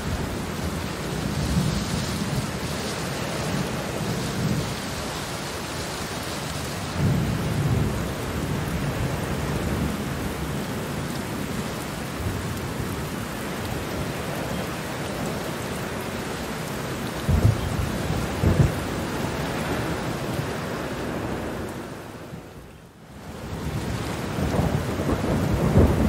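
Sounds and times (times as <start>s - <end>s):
steady rain falling: 0.0s - 26.0s
low roll of thunder: 6.9s - 10.4s, 17.2s - 20.5s, 23.3s - 26.0s.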